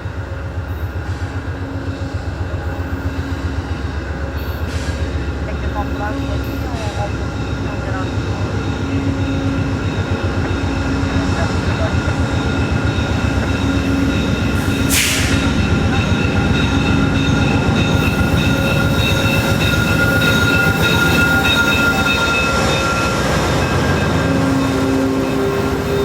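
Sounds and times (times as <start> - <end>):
train rumbling: 0.0 - 26.0
brake and wheel squeal: 12.3 - 26.0
brief air hiss: 14.8 - 15.4.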